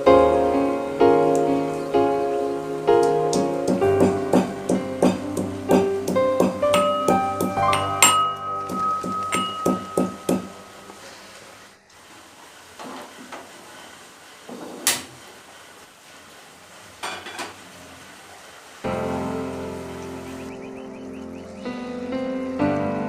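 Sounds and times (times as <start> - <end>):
piano music: 0.0 - 11.3, 18.9 - 23.0
low hiss: 0.0 - 23.0
utensil clinking against a pot: 7.7 - 10.5.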